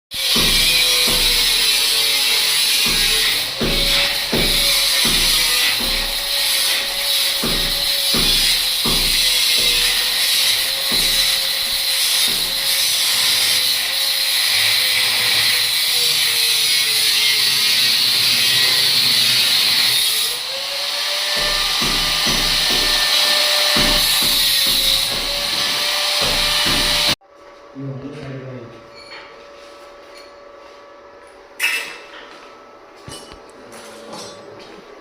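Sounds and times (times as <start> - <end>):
angle grinder cutting steel pipe: 0.2 - 27.2.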